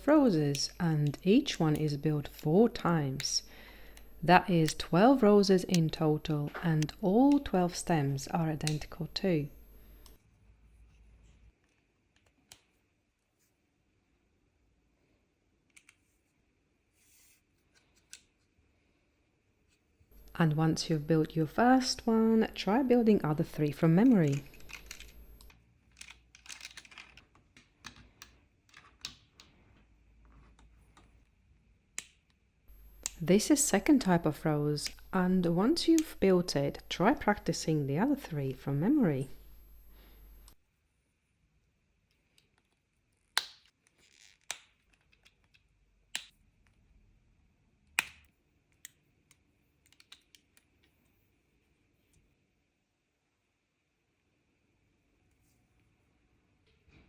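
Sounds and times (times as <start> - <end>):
plastic toy bricks clicking together: 24.2 - 29.6, 49.8 - 50.7
plastic pieces snapping together: 42.4 - 46.3.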